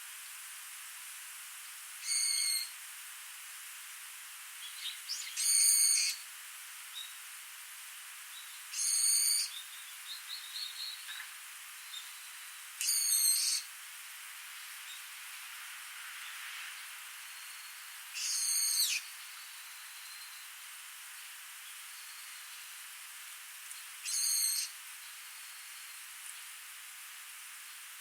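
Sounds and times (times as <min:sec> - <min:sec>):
faint bird chirps: 0:02.0 - 0:02.7, 0:04.6 - 0:06.2, 0:11.8 - 0:13.7, 0:17.3 - 0:20.6, 0:21.2 - 0:22.7, 0:23.7 - 0:26.5.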